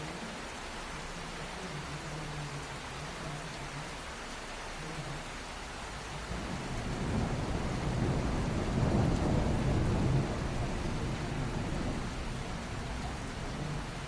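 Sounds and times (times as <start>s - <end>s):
heavy rain pouring: 0.0s - 14.0s
thunder rumbling: 6.3s - 14.0s.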